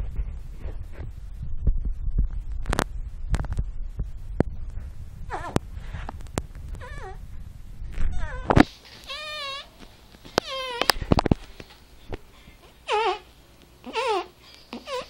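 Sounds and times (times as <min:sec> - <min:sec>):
dog whining: 0:08.1 - 0:09.8.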